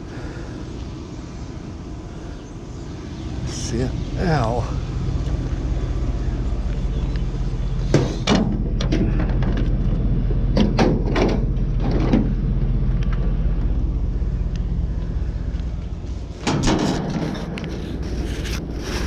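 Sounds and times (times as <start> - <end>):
vehicle engine idling: 0.0 - 19.0
knocks and clunks: 7.8 - 13.3, 16.4 - 18.5.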